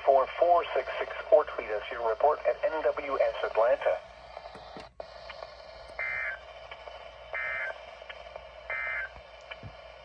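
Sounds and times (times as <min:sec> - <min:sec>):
steady radio hiss: 0:00.0 - 0:10.0.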